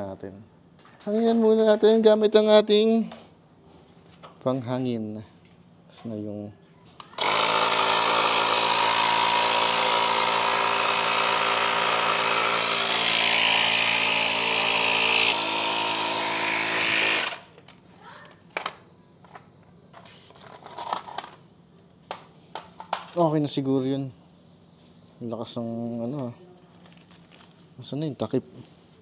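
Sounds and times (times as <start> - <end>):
tire inflator running: 7.2 - 17.5.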